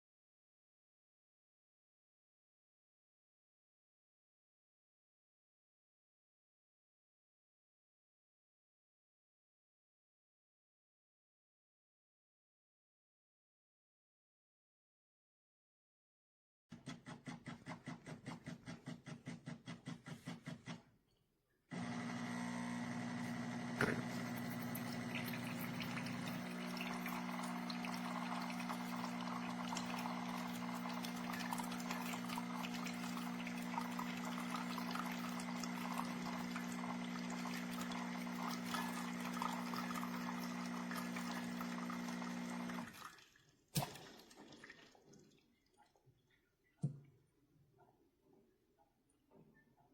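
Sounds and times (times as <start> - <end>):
espresso machine pump: 21.7 - 42.9
water flowing: 23.7 - 45.6.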